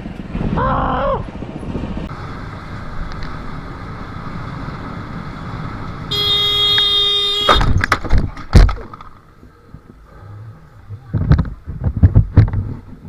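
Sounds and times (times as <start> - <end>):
motorbike wind and road noise: 0.0 - 13.0
vehicle horn blast: 6.1 - 7.7.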